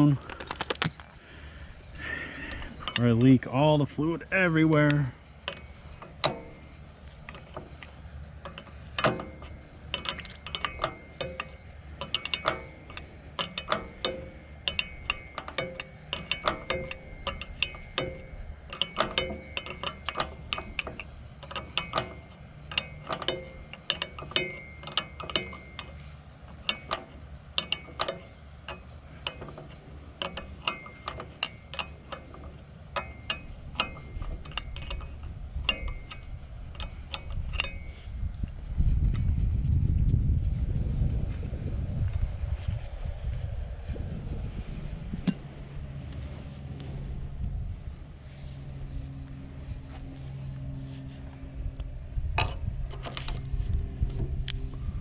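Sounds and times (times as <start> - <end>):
hand tools clicking on metal: 0.0 - 1.2, 1.9 - 38.5
steady low hum: 0.0 - 55.0.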